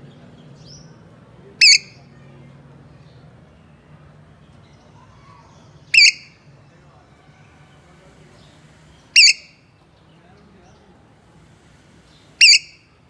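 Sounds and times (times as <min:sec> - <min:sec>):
parrot calling: 0:01.6 - 0:02.0, 0:05.2 - 0:06.4, 0:09.2 - 0:09.6, 0:12.4 - 0:12.8.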